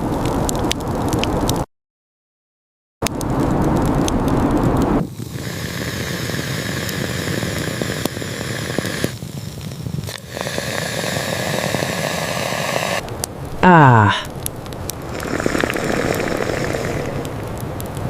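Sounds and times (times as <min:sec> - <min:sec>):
campfire crackling and hissing: 0:00.0 - 0:01.6, 0:03.0 - 0:18.0.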